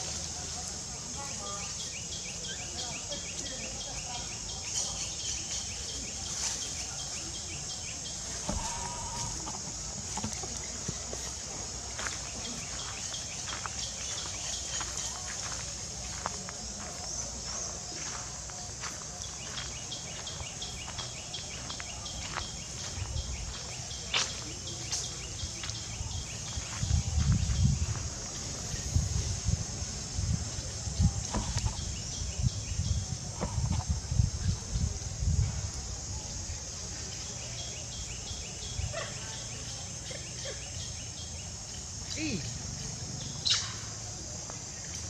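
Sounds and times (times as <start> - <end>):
insects droning: 0.0 - 45.0
short calls: 8.4 - 9.9.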